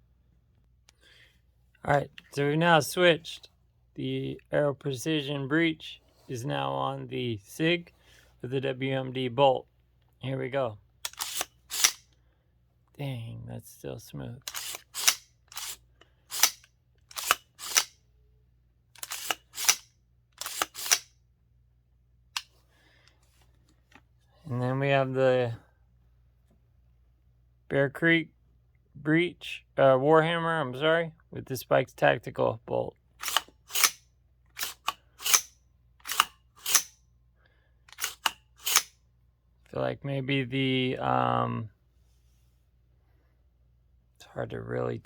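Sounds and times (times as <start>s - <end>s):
metallic bolt sliding strokes: 11.1s - 12.0s, 14.5s - 17.9s, 19.0s - 19.8s, 20.4s - 21.1s, 33.2s - 34.0s, 34.6s - 37.0s, 37.9s - 38.9s.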